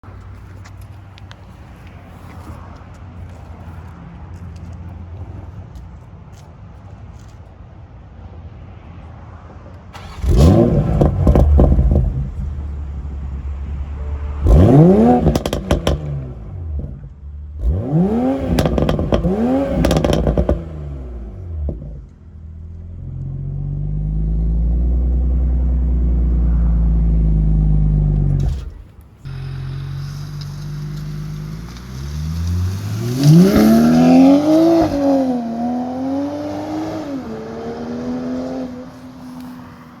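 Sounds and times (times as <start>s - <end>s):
exhaust pops and crackles: 10.0s - 17.8s, 18.4s - 20.7s, 26.2s - 35.0s
car engine revving: 10.0s - 22.1s, 22.8s - 39.6s
low exhaust drone: 10.2s - 18.1s.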